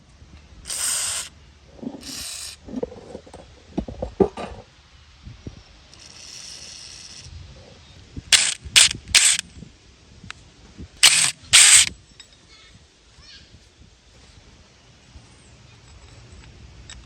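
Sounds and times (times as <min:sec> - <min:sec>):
harsh rasping tool bursts: 0:00.7 - 0:01.3, 0:02.0 - 0:02.6, 0:05.9 - 0:07.3, 0:08.3 - 0:09.4, 0:11.0 - 0:11.9.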